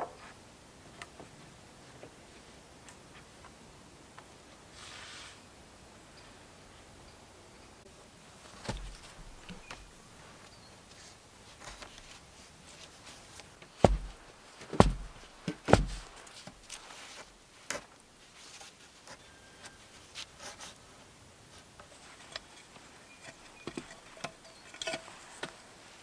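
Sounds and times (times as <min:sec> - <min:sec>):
handling noises: 0:08.3 - 0:20.8
sharp knocks and thumps: 0:13.8 - 0:16.6.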